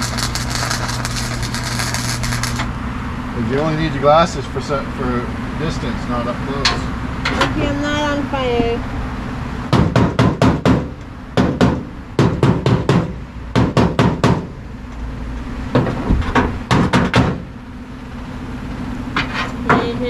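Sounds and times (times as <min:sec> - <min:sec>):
low steady hum: 0:00.0 - 0:09.8.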